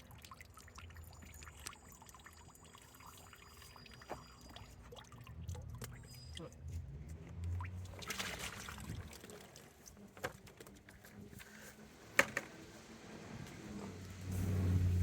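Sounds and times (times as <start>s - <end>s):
light water splashing: 0.0s - 11.1s.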